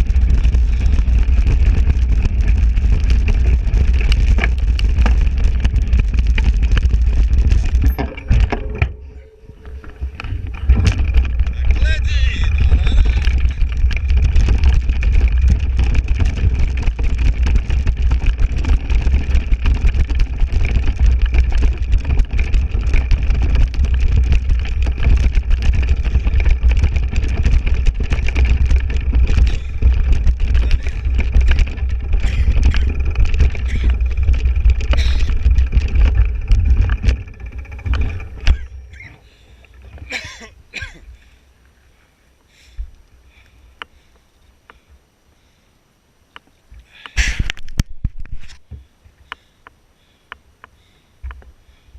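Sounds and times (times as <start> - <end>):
steady high whine: 0.0 - 39.1
wind buffeting microphone: 0.0 - 39.2
bike rattling over rough ground: 0.0 - 42.0, 46.4 - 50.2.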